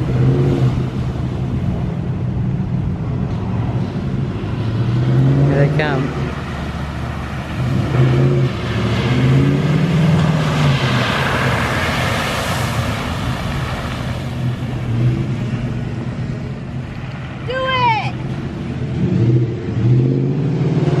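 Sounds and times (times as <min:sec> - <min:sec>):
truck engine revving: 0:03.7 - 0:17.4, 0:18.3 - 0:21.0.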